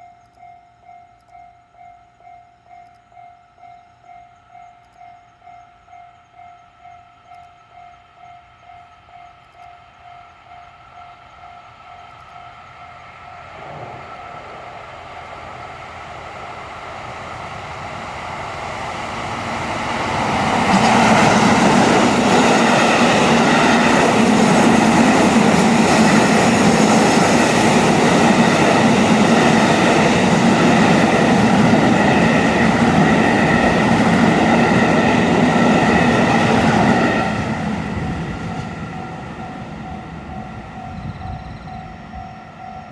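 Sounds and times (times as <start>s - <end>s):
train wheels running: 0.0s - 42.9s
diesel train passing: 0.8s - 42.9s.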